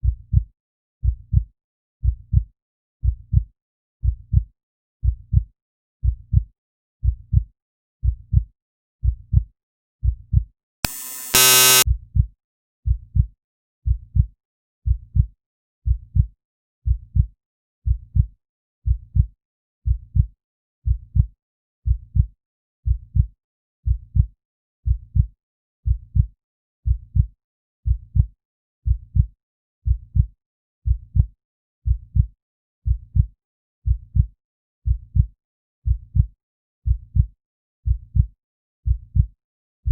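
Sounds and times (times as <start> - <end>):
loud buzz: 10.9 - 11.8
heartbeat: 38.9 - 39.3.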